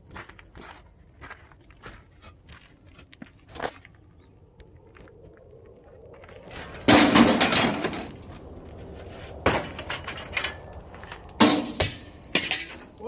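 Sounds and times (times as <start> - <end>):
clattering crash of hard objects: 6.8 - 8.2, 11.4 - 12.9.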